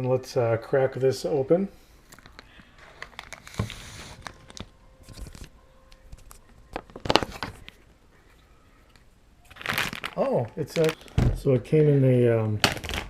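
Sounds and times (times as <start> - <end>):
wrapping paper tearing and crinkling: 2.2 - 5.5, 9.5 - 11.2, 12.6 - 13.0.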